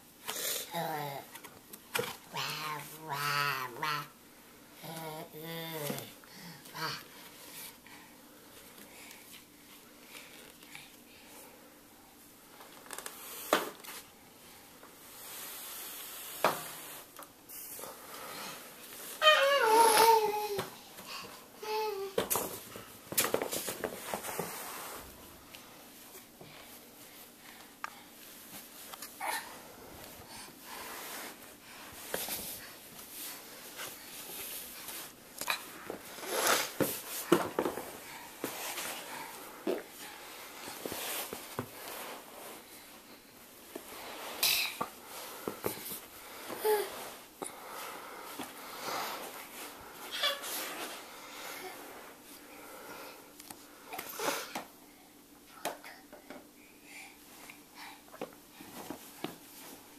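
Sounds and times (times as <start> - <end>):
soft rustling: 29.8 - 52.5.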